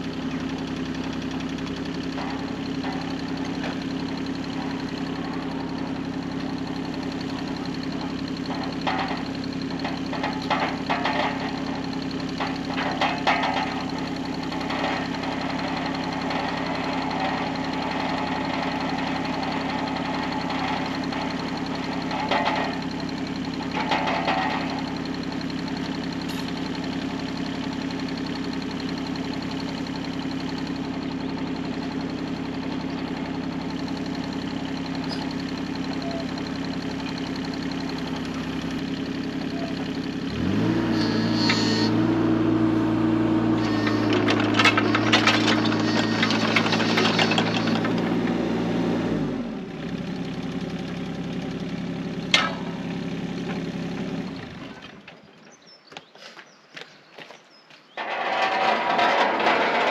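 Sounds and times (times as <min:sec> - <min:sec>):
machine engine idling: 0:00.0 - 0:55.4, 0:58.0 - 0:59.9
metal clanks: 0:02.0 - 0:26.7, 0:43.6 - 0:48.3, 0:52.3 - 0:53.6, 0:58.0 - 0:59.9.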